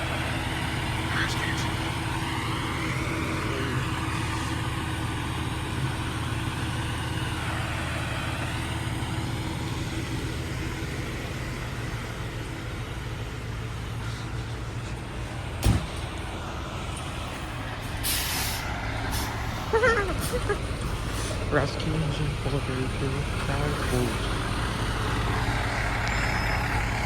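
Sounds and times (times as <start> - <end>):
diesel engine idling: 0.0 - 27.0
sharp thump: 15.6 - 16.0.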